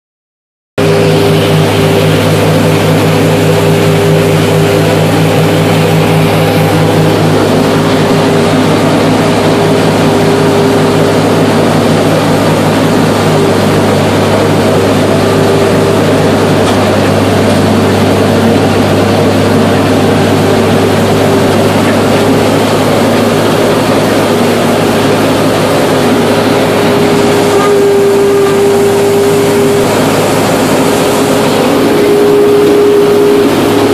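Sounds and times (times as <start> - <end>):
combine harvester engine drone: 0.8 - 33.9
machinery whine: 0.8 - 33.9.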